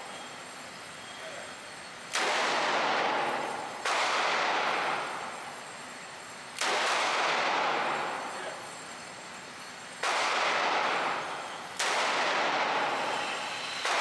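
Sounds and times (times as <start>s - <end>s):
handgun shots with echo: 2.1s - 5.0s, 6.6s - 8.0s, 10.0s - 13.1s.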